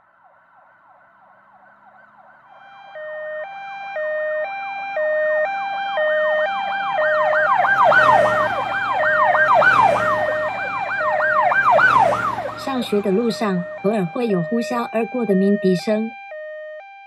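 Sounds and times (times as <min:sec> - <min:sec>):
two-tone hi-lo siren: 0:00.0 - 0:17.0
wailing yelp siren: 0:00.0 - 0:17.0
traffic rumble: 0:04.5 - 0:16.2.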